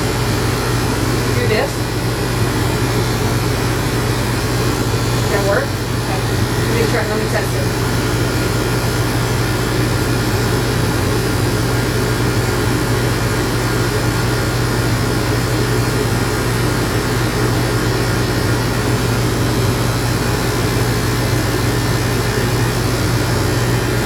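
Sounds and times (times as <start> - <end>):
electric clippers humming: 0.0 - 24.0.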